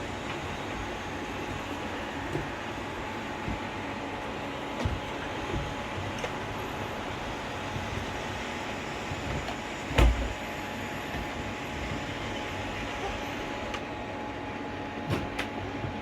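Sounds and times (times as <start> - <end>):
robot vacuum whine: 0.0 - 14.6.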